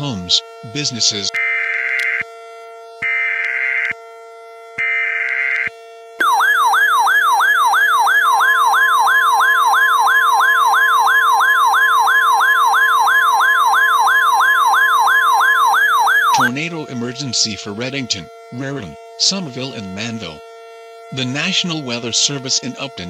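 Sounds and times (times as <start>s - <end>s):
low steady hum: 0.0s - 23.0s
warbling siren alert tone: 0.0s - 23.0s
steady alert tone: 6.2s - 18.2s.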